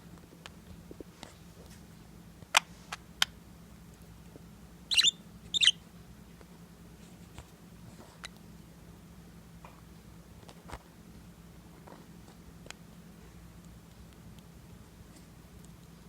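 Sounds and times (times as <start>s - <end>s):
budgerigar chirps: 4.9s - 5.8s.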